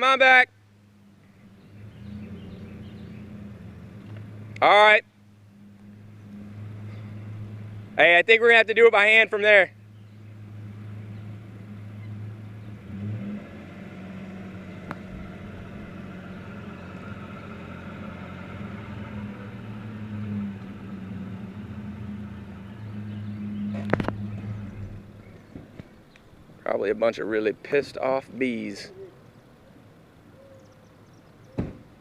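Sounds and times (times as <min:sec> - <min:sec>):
vehicle engine idling: 0:00.5 - 0:32.0
knock: 0:31.6 - 0:31.8.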